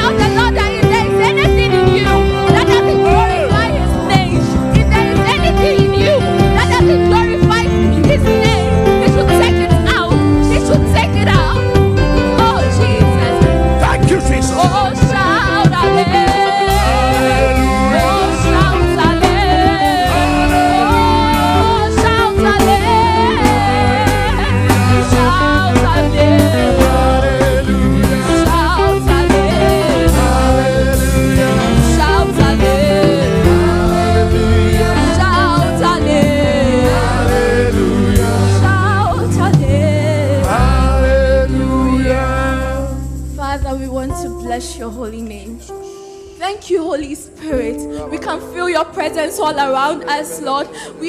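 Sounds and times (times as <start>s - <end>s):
gospel choir singing: 0.0s - 10.0s, 12.4s - 43.3s
lead vocals with vibrato: 0.0s - 11.6s, 12.2s - 51.0s
deep bass line: 0.0s - 45.7s
sustained chords: 11.8s - 43.2s.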